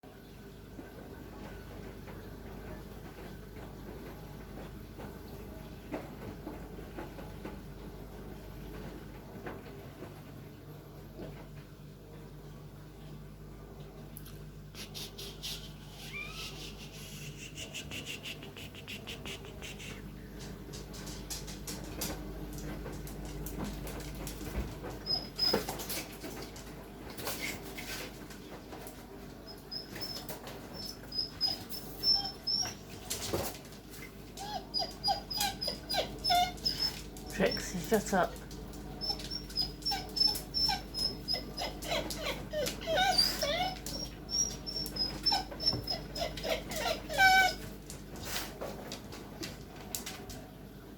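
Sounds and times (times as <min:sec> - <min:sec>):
steady low hum: 0:10.7 - 0:24.8
animal squeaking: 0:15.4 - 0:19.9, 0:29.7 - 0:32.8, 0:39.0 - 0:47.6.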